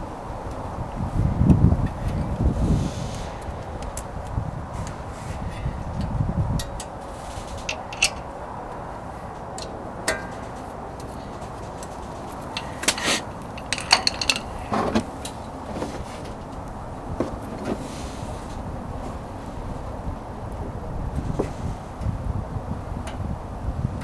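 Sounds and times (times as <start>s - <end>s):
wind noise on microphone: 0.0s - 24.0s
hand tools clinking on metal: 6.6s - 8.3s, 9.4s - 16.6s.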